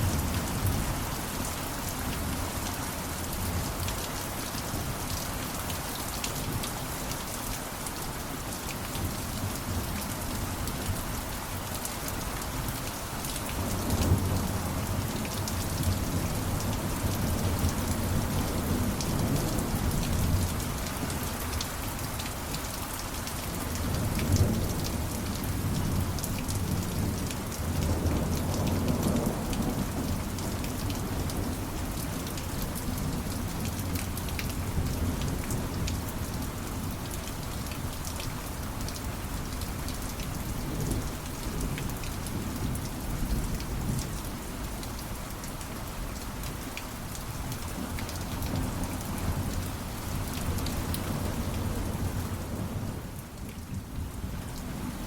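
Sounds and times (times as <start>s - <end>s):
heavy rain pattering: 0.0s - 55.0s.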